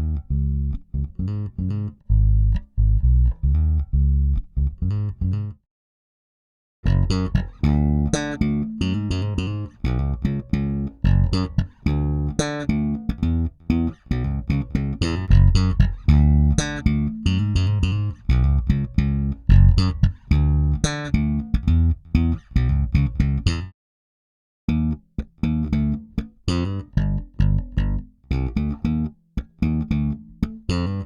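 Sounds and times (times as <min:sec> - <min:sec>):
electric bass guitar riff: 0:00.0 - 0:05.6, 0:06.9 - 0:23.7, 0:24.7 - 0:31.0.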